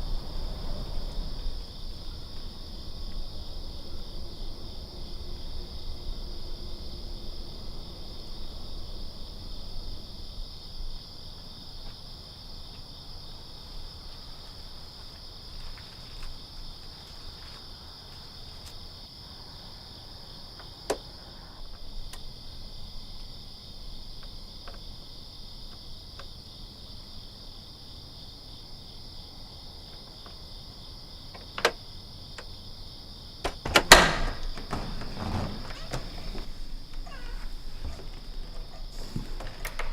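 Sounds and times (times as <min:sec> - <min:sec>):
crickets chirring: 0:00.0 - 0:39.9
knocks: 0:33.4 - 0:36.5.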